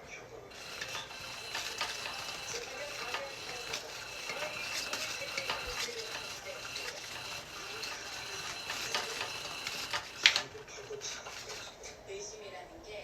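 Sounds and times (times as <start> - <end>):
toy motor whine: 0.4 - 12.1
plastic gears clicking and rattling: 0.5 - 12.0.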